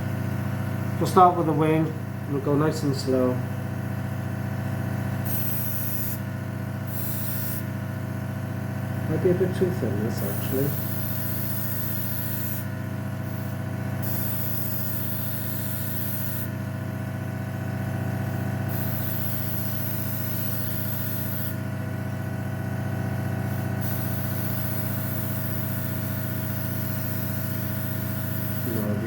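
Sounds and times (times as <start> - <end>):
compressor humming: 0.0 - 29.0
airbrush hissing: 5.2 - 7.8, 9.4 - 16.7, 18.2 - 21.6, 23.4 - 29.0.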